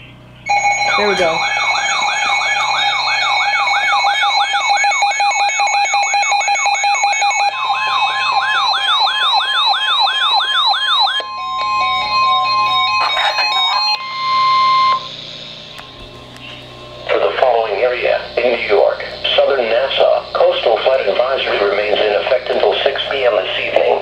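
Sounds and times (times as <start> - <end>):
steady electronic tone: 0.0 - 24.0
warbling electronic alert tone: 0.5 - 15.7.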